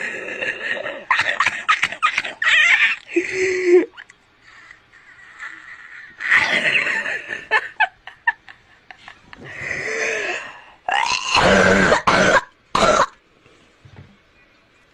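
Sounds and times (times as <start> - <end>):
child laughing: 0.0 - 7.6
child coughing harshly: 11.4 - 13.2.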